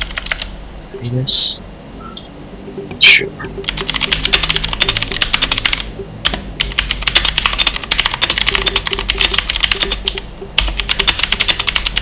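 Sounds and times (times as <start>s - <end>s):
mechanical keyboard typing: 0.0s - 0.5s, 3.6s - 12.0s.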